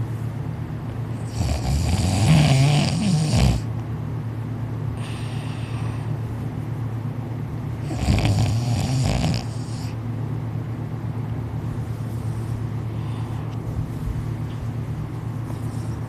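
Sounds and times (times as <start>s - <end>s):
steady low hum: 0.0s - 16.0s
loud snore: 1.2s - 3.7s, 7.8s - 10.0s.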